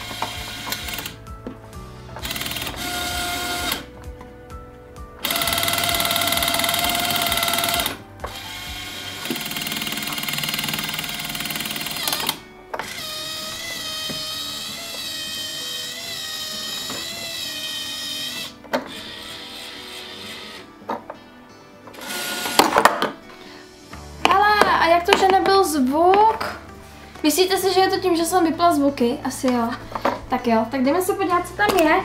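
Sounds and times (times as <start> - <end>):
background music with held notes: 0.0 - 32.0
small motor buzzing: 2.2 - 3.9, 5.2 - 20.8.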